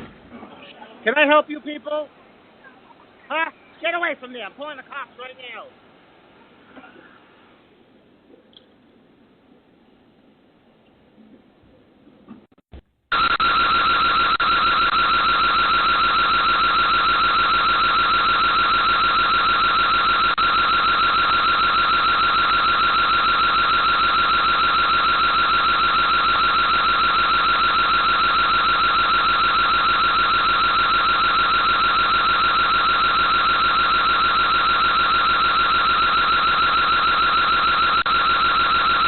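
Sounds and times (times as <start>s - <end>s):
pulsing electronic alarm siren: 13.1s - 39.0s.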